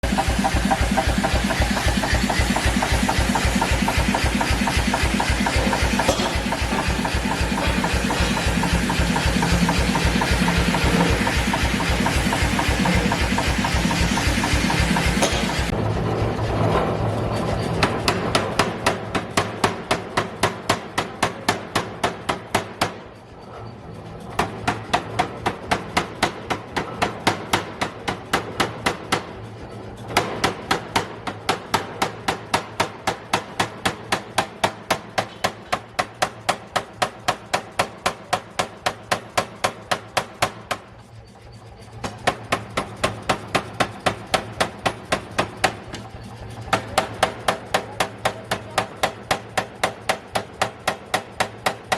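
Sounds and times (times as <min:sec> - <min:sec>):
pneumatic air hammer blows: 0:00.0 - 0:51.9.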